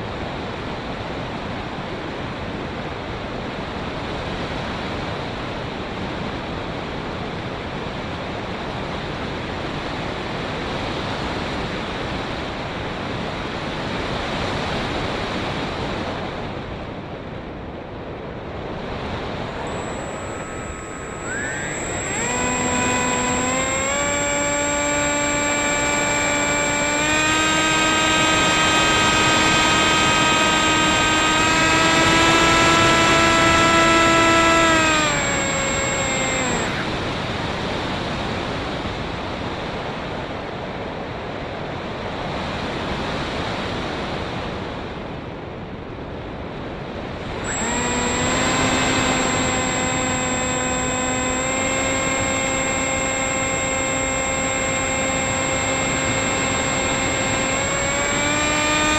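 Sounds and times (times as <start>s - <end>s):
electric motor and propeller whine: 18.8s - 38.5s, 47.0s - 58.9s.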